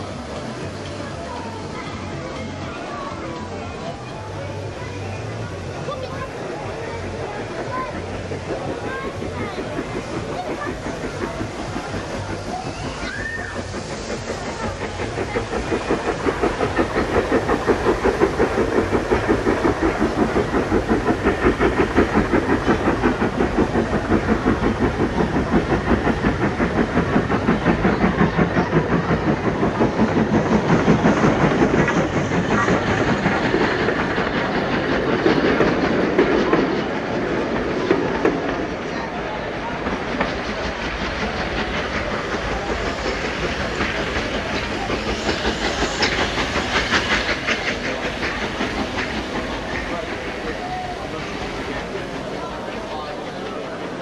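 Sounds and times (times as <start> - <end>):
model train wheels clicking: 0.0 - 54.0.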